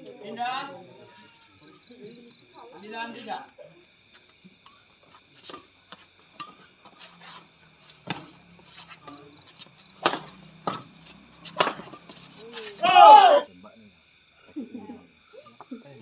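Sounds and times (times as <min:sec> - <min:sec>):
racket hitting shuttlecock: 0:10.0 - 0:10.8, 0:11.4 - 0:12.3.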